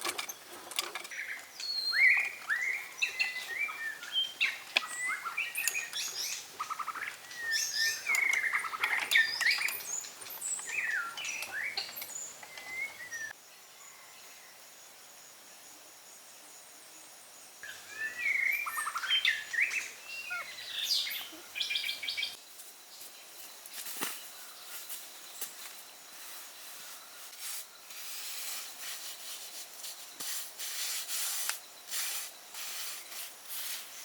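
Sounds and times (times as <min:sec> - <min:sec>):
insects chirring: 0:00.0 - 0:34.0
high chirping call: 0:17.6 - 0:22.4.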